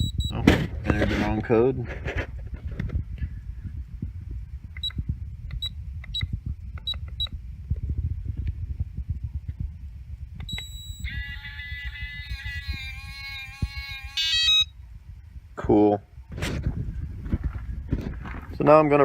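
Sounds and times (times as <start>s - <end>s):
keypad lock beeps: 0.0s - 0.4s, 10.5s - 11.1s, 14.2s - 14.7s
multi-tone electronic whine: 0.0s - 0.6s, 4.0s - 15.4s.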